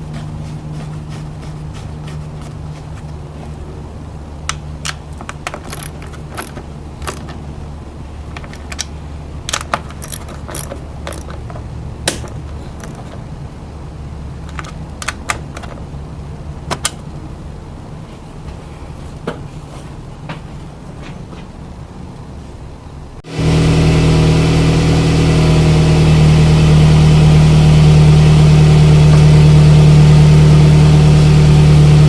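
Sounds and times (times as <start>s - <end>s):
metallic clicks and rattles: 4.5s - 7.5s, 8.3s - 13.3s, 14.4s - 15.9s
car engine idling: 23.2s - 32.0s.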